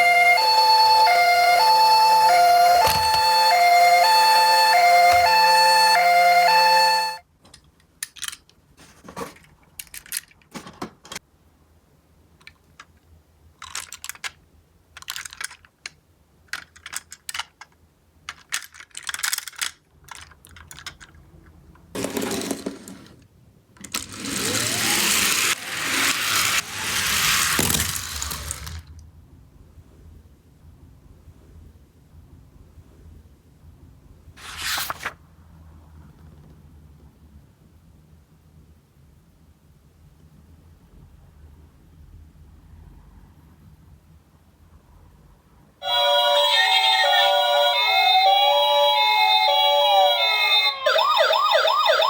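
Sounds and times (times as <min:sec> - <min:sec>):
toy electronic two-tone siren: 0:00.0 - 0:07.2, 0:24.0 - 0:28.8, 0:45.8 - 0:52.0
toy cars rattling and rolling: 0:08.0 - 0:08.5, 0:09.2 - 0:10.5, 0:13.6 - 0:29.0
toy cars clicking and clinking: 0:08.0 - 0:08.6, 0:09.8 - 0:10.5, 0:13.6 - 0:23.2, 0:23.8 - 0:29.0.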